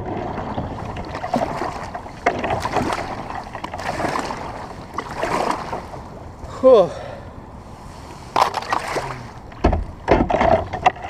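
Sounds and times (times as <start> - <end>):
water splashing and lapping: 0.0 - 6.8, 7.4 - 11.0
sharp knocks against hull: 0.5 - 5.8, 8.4 - 11.0.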